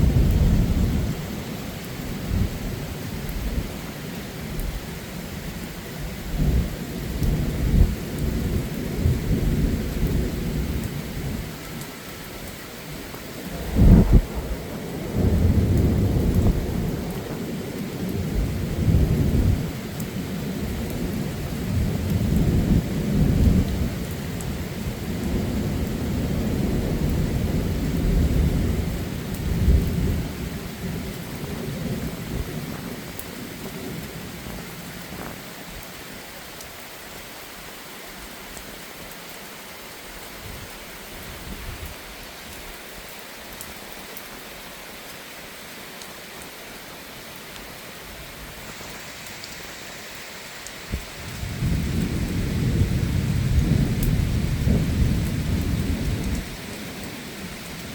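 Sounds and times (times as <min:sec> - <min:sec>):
heavy rain: 0:00.0 - 0:57.9
rolling thunder: 0:13.5 - 0:19.8, 0:50.9 - 0:57.9.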